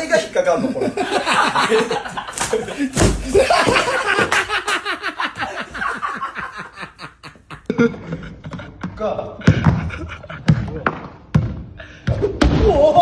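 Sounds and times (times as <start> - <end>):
person laughing hard: 0.6 - 8.8, 12.6 - 13.0.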